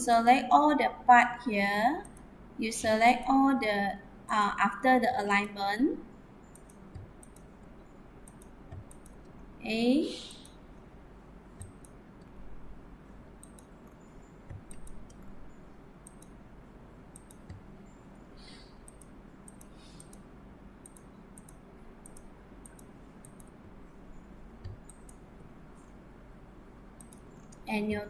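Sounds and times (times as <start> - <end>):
low background hum: 0.0 - 28.0
computer mouse clicking: 2.0 - 3.3, 6.4 - 9.4, 10.3 - 10.6, 11.6 - 12.4, 13.4 - 16.4, 17.1 - 18.0, 18.8 - 26.0, 27.0 - 27.7.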